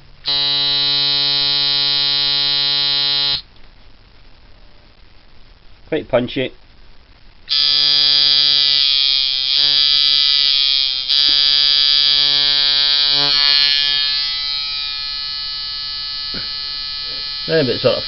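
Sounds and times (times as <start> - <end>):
tattoo machine buzzing: 0.2 - 3.4, 7.5 - 18.0.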